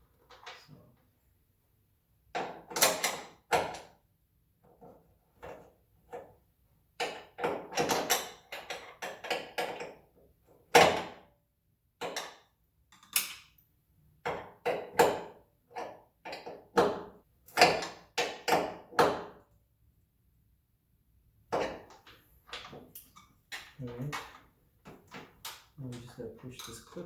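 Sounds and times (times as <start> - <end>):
hand tools clicking and knocking: 21.6 - 27.0.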